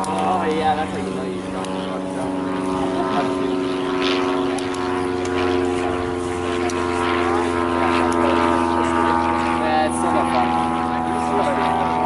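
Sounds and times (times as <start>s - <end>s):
steady engine drone: 0.0s - 12.0s.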